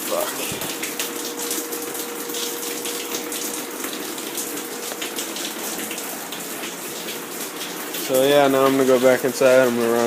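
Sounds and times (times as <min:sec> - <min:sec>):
heavy rain pouring: 0:00.0 - 0:10.0.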